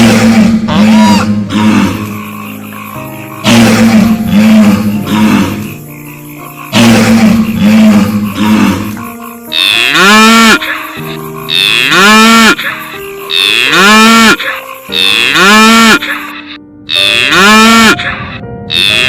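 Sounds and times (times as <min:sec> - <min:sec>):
cow mooing: 0:02.8 - 0:05.8, 0:06.7 - 0:16.3, 0:16.9 - 0:19.0.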